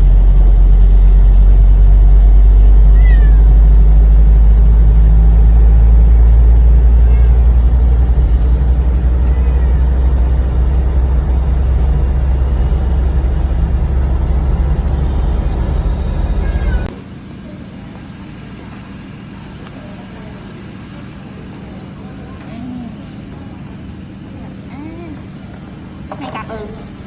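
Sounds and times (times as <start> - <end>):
car cabin engine and road drone: 0.0 - 27.0.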